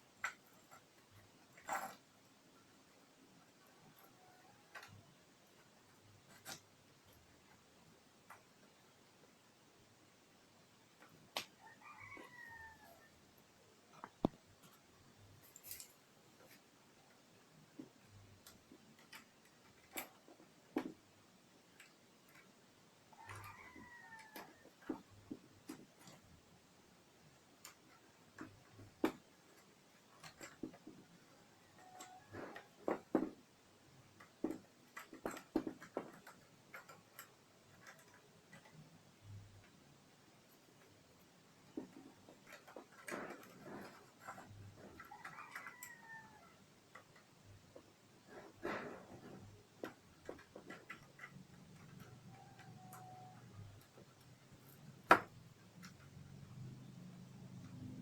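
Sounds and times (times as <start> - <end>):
faint low hum: 0.0 - 58.0
light clicks and knocks: 27.6 - 39.8, 40.4 - 58.0
light clicks and taps: 27.6 - 39.8.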